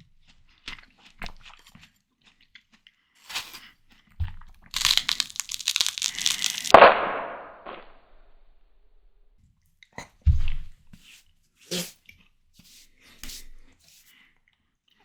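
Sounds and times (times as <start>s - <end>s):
watermelon being bitten and chewed: 0.0s - 6.8s.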